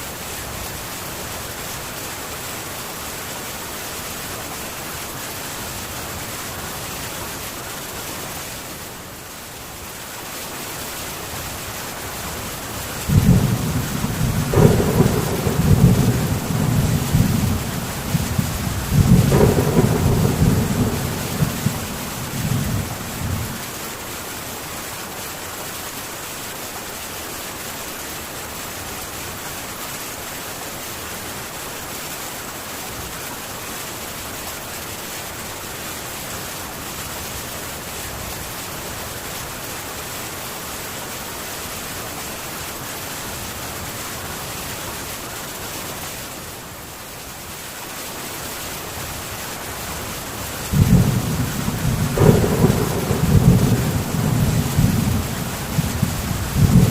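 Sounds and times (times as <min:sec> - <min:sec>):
heavy rain on a tin roof: 0:00.0 - 0:56.9
low thunder rumble: 0:13.1 - 0:23.6, 0:50.7 - 0:56.9.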